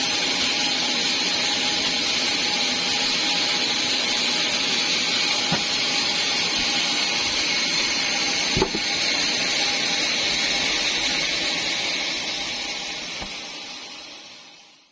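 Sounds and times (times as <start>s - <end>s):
band sawmill hissing: 0.0s - 14.9s
knock: 8.6s - 8.9s.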